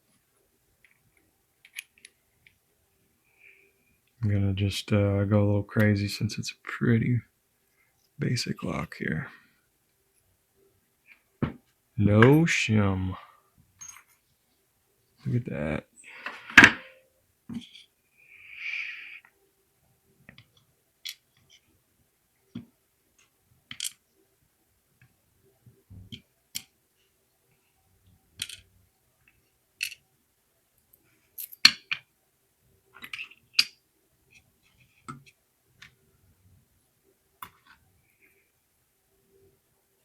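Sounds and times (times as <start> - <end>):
small metallic clicks and taps: 29.3 - 30.0.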